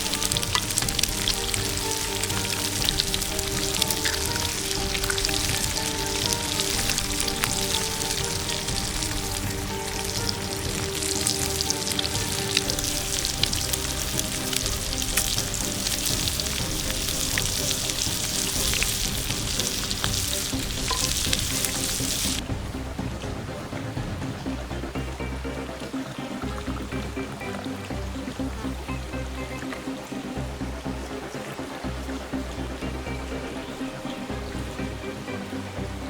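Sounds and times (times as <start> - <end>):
food sizzling over campfire: 0.0 - 22.5.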